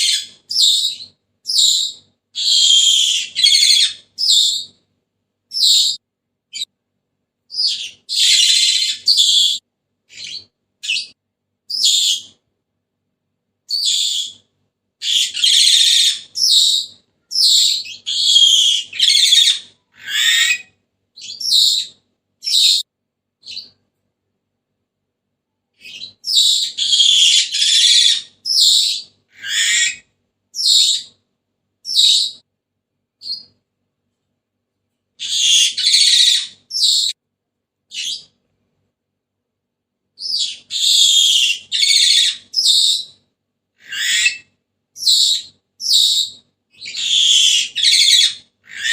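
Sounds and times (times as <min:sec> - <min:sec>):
parrot whistling and screeching: 0:00.0 - 0:04.7, 0:05.5 - 0:06.0, 0:07.5 - 0:12.4, 0:13.7 - 0:14.4, 0:15.0 - 0:22.8, 0:25.8 - 0:31.2, 0:31.9 - 0:32.4, 0:35.2 - 0:37.2, 0:37.9 - 0:38.3, 0:40.2 - 0:43.2, 0:43.8 - 0:48.9.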